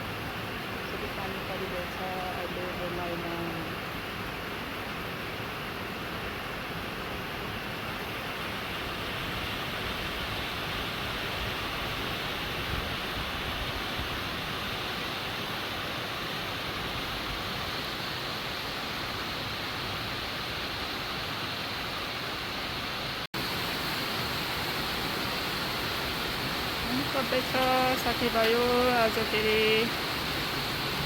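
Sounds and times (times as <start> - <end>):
rain falling: 8.4 - 31.0.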